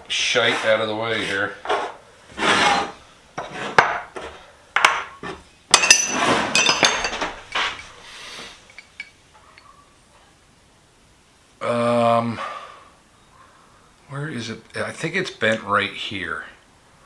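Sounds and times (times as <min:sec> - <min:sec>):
metal tools clinking and clattering: 0:05.3 - 0:09.7.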